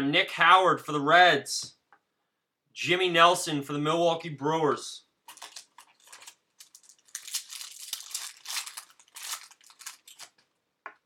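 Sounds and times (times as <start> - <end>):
foil wrapper crinkling and tearing: 5.2 - 10.6.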